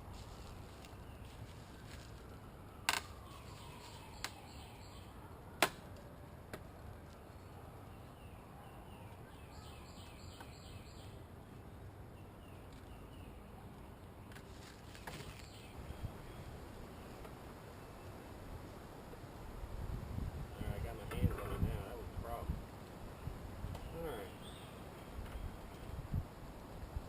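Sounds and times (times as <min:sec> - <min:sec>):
wind rumbling on microphone: 0:19.4 - 0:24.1, 0:24.8 - 0:27.0.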